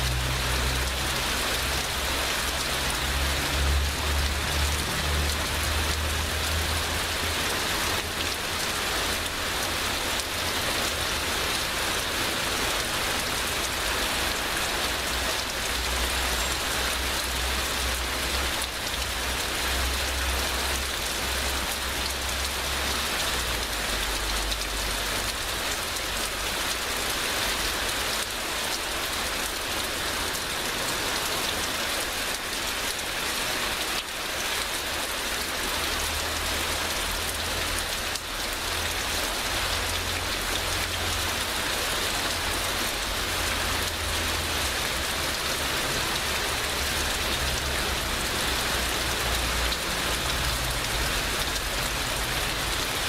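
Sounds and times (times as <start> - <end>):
heavy rain: 0.0 - 53.0.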